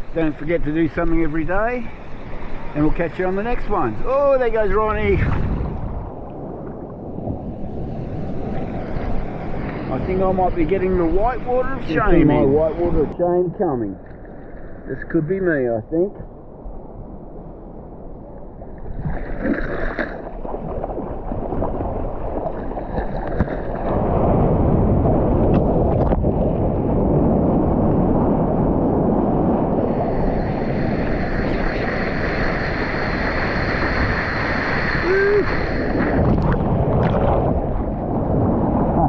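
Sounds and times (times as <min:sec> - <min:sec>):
whitewater rushing: 0:29.9 - 0:37.4.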